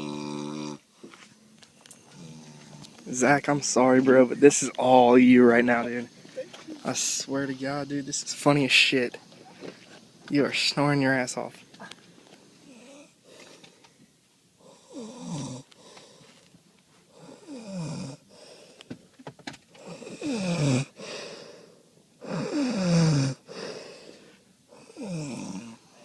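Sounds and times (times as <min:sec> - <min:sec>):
man snoring: 0:00.0 - 0:00.9, 0:02.0 - 0:03.4, 0:12.6 - 0:13.2, 0:14.6 - 0:16.2, 0:17.1 - 0:18.8, 0:19.8 - 0:26.0.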